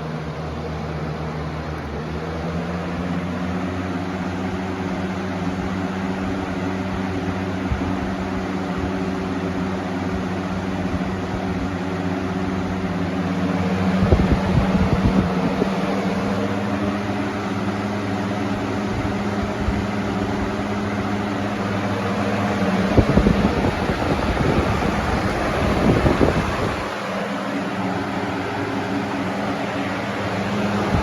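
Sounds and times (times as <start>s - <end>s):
electric fan motor hum: 0.0s - 31.0s
rushing air from fan blade: 0.0s - 31.0s
wind buffeting microphone: 12.4s - 31.0s.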